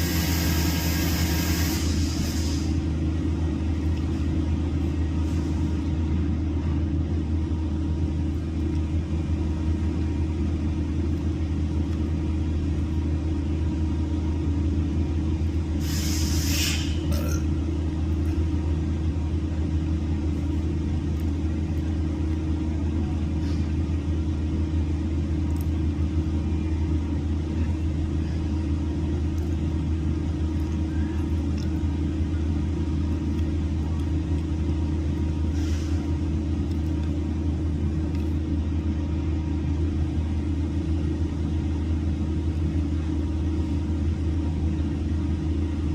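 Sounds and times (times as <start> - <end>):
engine low rumble: 0.0 - 45.9
brief hiss: 0.5 - 2.8, 15.8 - 17.0.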